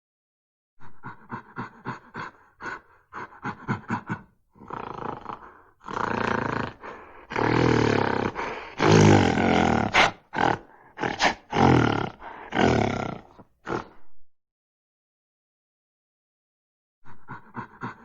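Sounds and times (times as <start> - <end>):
gorilla grunting: 0.8 - 14.0, 17.1 - 18.0.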